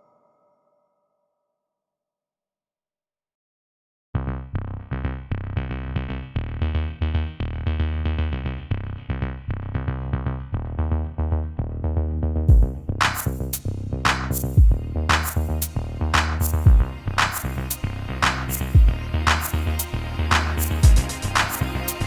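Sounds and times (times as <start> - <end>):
electronic music with drum machine: 12.5 - 22.0.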